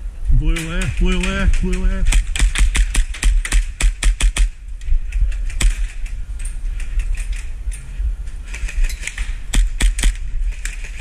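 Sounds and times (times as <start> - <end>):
low microphone rumble: 0.0 - 11.0
airsoft gun shots: 0.6 - 4.6, 9.0 - 10.2.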